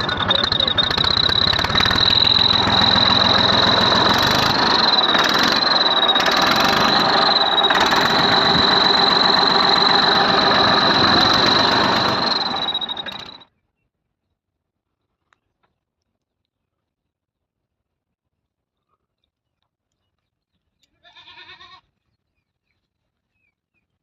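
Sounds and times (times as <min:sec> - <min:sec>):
diesel tractor engine running: 0:00.0 - 0:13.4
high-pitched whistle: 0:00.0 - 0:13.4.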